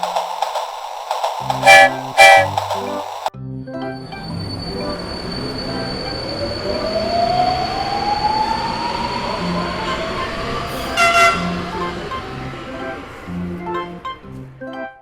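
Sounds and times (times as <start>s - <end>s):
train rolling on rails: 0.0s - 14.9s
train horn toot: 1.5s - 3.0s, 9.1s - 14.4s
rising whine: 3.9s - 14.7s.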